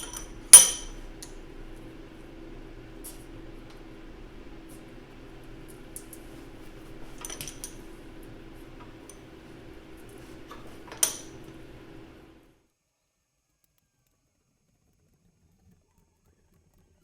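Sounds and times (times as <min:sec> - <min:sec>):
sharp metal clank: 0:00.0 - 0:01.4, 0:05.4 - 0:12.1
metal parts and tools clinking: 0:00.0 - 0:01.8, 0:02.8 - 0:12.2
steady hum: 0:00.0 - 0:12.5.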